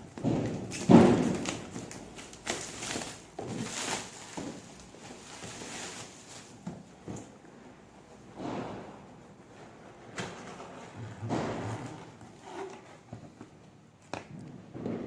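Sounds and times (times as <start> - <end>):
packaging rustling: 0.2 - 7.3.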